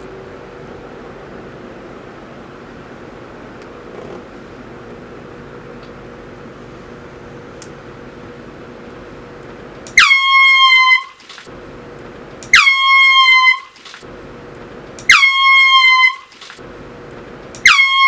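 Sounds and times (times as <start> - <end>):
air horn blasts: 10.0 - 11.3, 12.5 - 13.9, 15.1 - 16.4.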